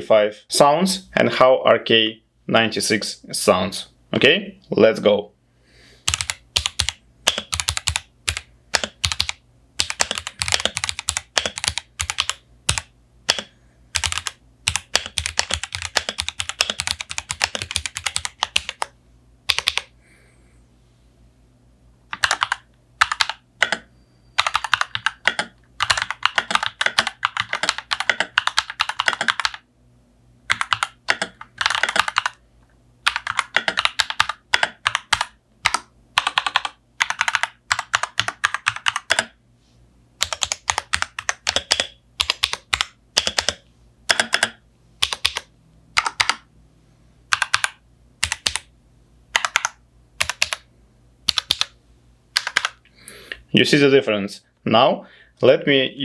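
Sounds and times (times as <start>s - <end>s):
mechanical keyboard typing: 6.1s - 19.9s, 22.1s - 29.6s, 30.5s - 32.4s, 33.0s - 39.4s, 40.2s - 46.5s, 47.3s - 48.7s, 49.3s - 51.8s, 52.4s - 52.8s.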